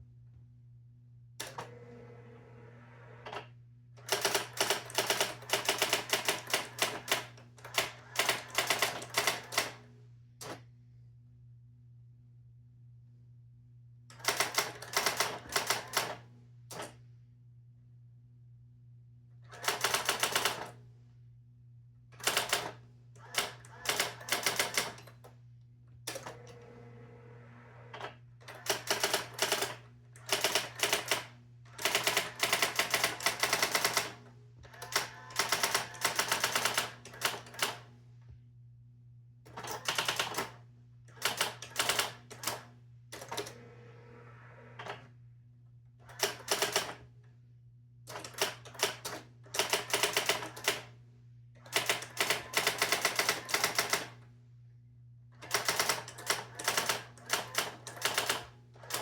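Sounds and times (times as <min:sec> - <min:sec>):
electronic typewriter typing: 0:04.0 - 0:09.7, 0:14.2 - 0:16.1, 0:19.6 - 0:20.6, 0:22.2 - 0:22.6, 0:23.4 - 0:25.0, 0:28.5 - 0:31.2, 0:31.8 - 0:34.1, 0:34.8 - 0:37.8, 0:39.6 - 0:40.4, 0:41.2 - 0:42.6, 0:46.2 - 0:47.0, 0:49.6 - 0:50.8, 0:51.7 - 0:54.1, 0:55.4 - 0:59.0.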